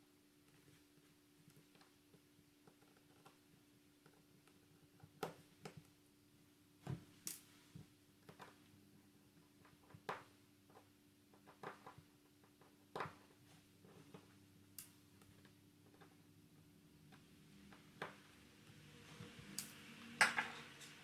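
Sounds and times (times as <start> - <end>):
small clicks and taps of parts: 1.4 - 6.0, 6.8 - 8.7, 9.5 - 16.2
faint steady hum: 12.0 - 21.0.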